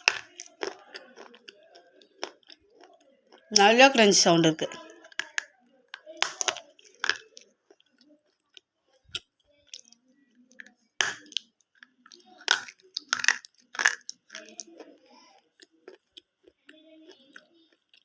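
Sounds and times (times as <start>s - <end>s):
soft chewing: 0.0s - 3.6s, 4.7s - 18.0s
crisp crunching bites: 12.4s - 14.6s.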